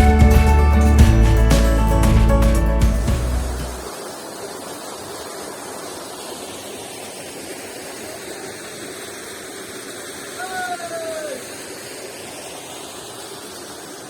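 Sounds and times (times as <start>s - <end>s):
background music: 0.0s - 3.8s
waterfall rushing: 0.0s - 14.0s.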